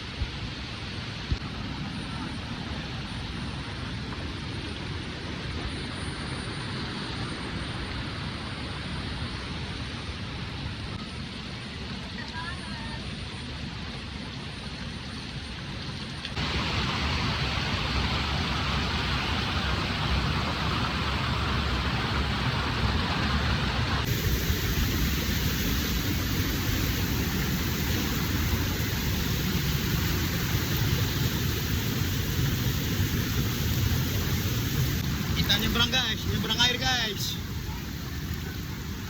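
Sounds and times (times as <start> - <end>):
waterfall rushing: 16.4 - 39.0.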